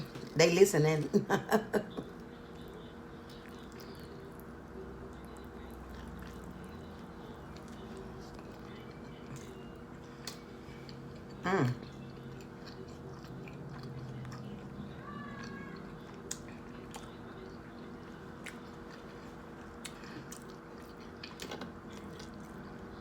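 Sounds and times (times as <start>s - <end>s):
faint room hum: 0.0s - 23.0s
chewing and biting sandwich: 2.4s - 23.0s.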